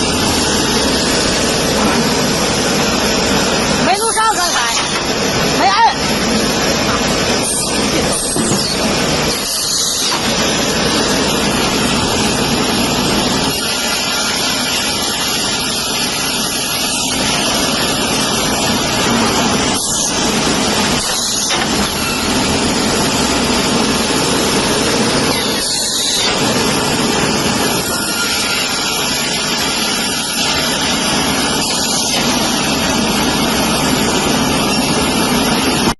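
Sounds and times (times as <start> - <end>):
woodworking machinery running: 0.0 - 35.9.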